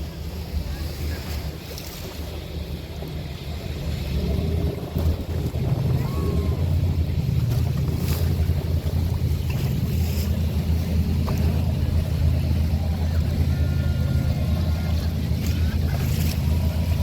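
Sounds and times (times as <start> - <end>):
motorboat engines droning: 0.0 - 17.0.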